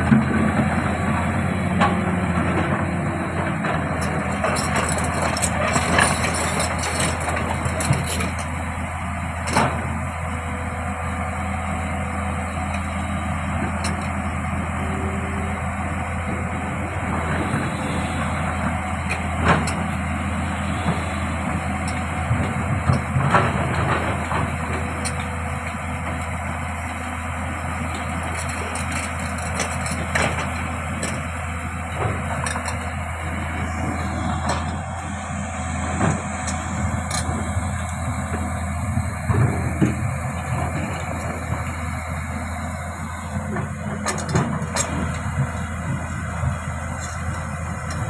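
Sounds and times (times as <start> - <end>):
excavator diesel engine running: 0.0 - 48.0.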